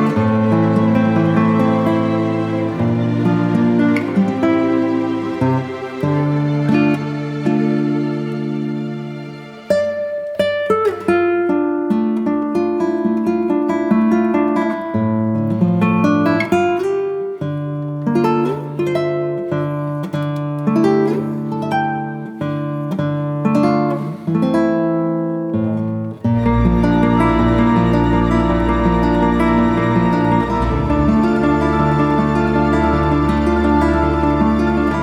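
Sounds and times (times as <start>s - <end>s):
acoustic guitar music: 0.0s - 35.0s.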